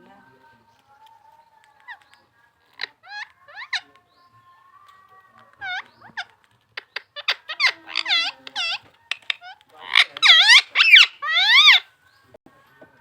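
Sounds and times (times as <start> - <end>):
parrot chirps and squawks: 2.7 - 3.9, 5.4 - 11.9.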